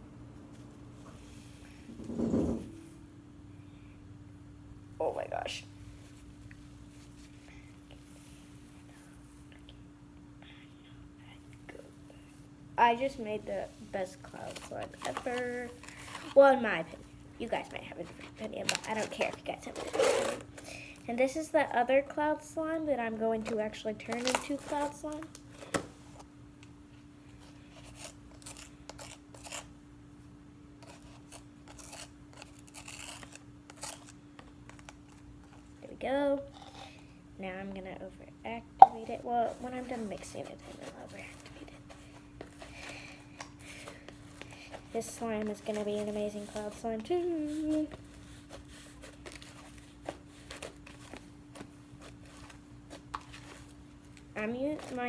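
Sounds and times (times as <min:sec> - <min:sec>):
steady low hum: 0:00.0 - 0:55.0
slime being stirred: 0:12.9 - 0:20.5, 0:27.4 - 0:29.7, 0:30.8 - 0:35.6, 0:38.8 - 0:43.1, 0:43.7 - 0:53.8.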